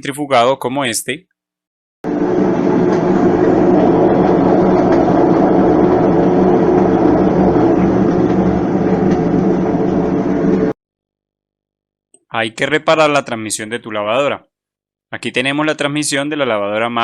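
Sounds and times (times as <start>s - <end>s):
washing machine spin cycle: 2.0s - 10.8s.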